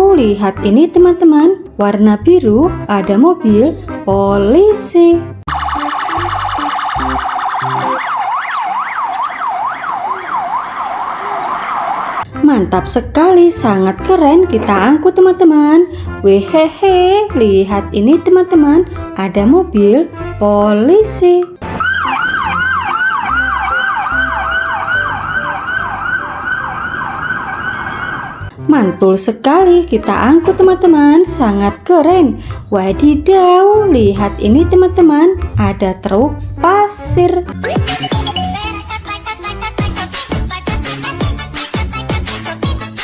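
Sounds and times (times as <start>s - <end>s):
police siren wailing: 5.5s - 12.3s, 21.6s - 28.5s.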